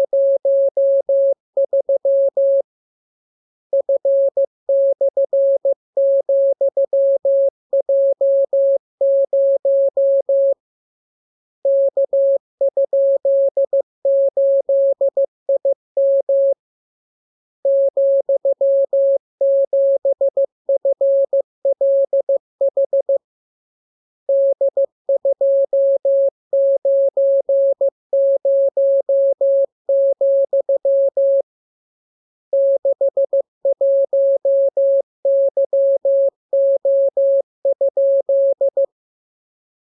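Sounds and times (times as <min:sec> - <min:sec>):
morse code tone: 0:32.6 - 0:38.9.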